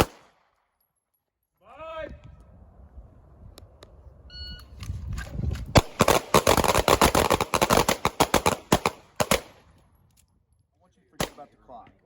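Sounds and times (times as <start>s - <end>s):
rapid pistol shots: 0.0s - 0.4s, 5.8s - 9.6s.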